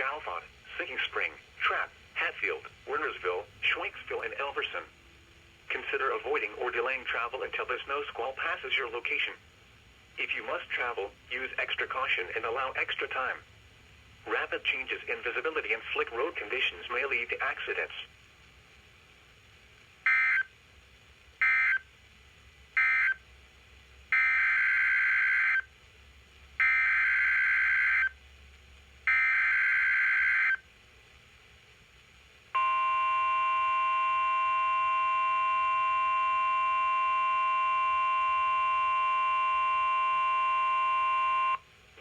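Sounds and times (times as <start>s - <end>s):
steady warning alarm tone: 21.4s - 21.8s, 22.8s - 23.2s, 24.1s - 25.7s, 26.6s - 28.2s, 29.1s - 30.6s, 32.6s - 41.6s.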